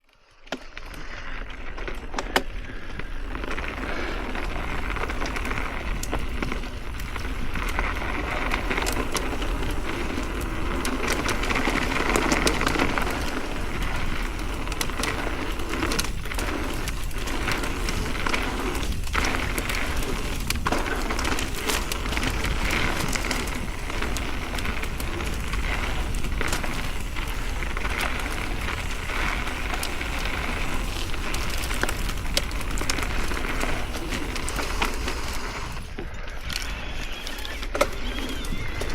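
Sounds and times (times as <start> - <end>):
tyres crunching on gravel: 0.3 - 38.9
bike clicks and knocks: 37.2 - 38.9.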